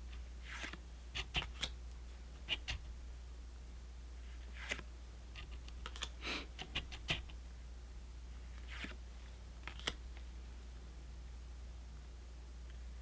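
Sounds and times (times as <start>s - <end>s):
low steady hum: 0.0s - 13.0s
cards sliding swishes: 0.1s - 1.7s, 4.3s - 7.2s, 8.5s - 9.0s
cards clicking and snapping: 0.5s - 1.8s, 5.4s - 7.3s, 9.6s - 10.0s.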